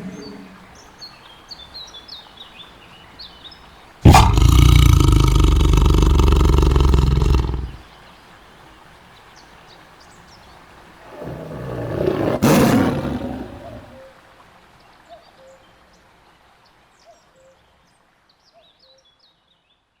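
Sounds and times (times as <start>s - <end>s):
tiger roaring: 4.0s - 7.8s, 11.0s - 14.0s.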